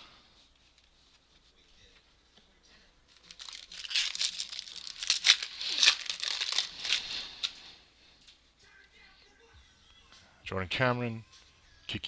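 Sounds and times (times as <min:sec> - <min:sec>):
plastic wrapper tearing and crinkling: 0:03.1 - 0:07.6.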